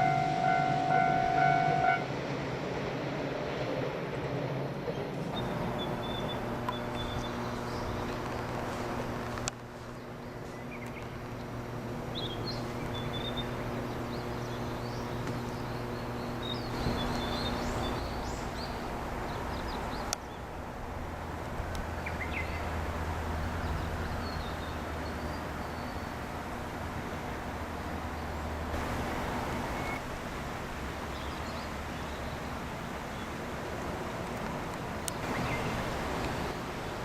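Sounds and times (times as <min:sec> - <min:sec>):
steady outdoor hum: 0:00.0 - 0:37.0
small birds chirping: 0:04.9 - 0:20.5.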